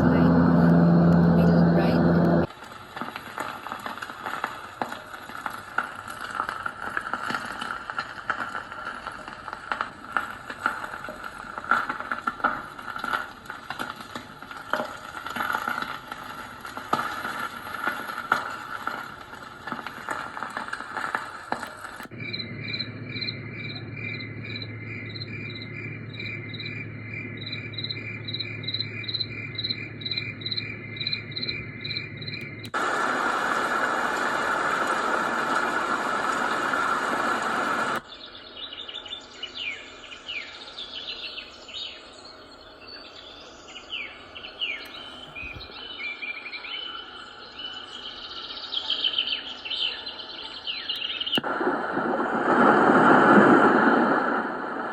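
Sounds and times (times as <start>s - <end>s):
low hum: 0.0s - 2.5s, 22.1s - 38.0s
steady rushing noise: 0.0s - 2.5s
recorded cricket chirping: 22.0s - 32.8s
recorded birdsong: 22.1s - 32.8s, 37.7s - 51.4s.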